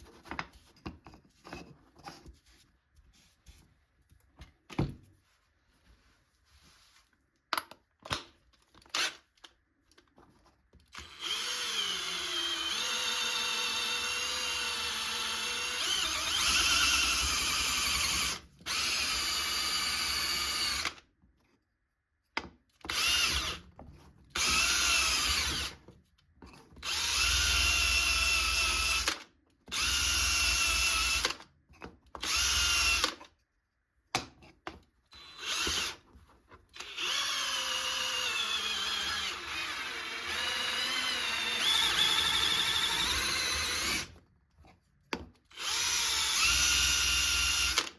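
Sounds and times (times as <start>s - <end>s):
electric power tool working wood: 11.0s - 20.9s, 36.8s - 44.1s.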